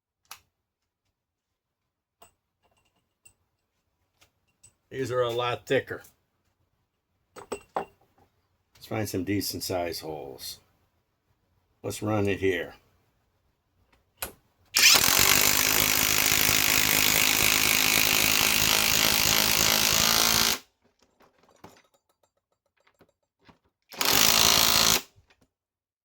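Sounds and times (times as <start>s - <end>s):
impact wrench driving fastener: 14.8s - 20.6s, 23.9s - 25.1s.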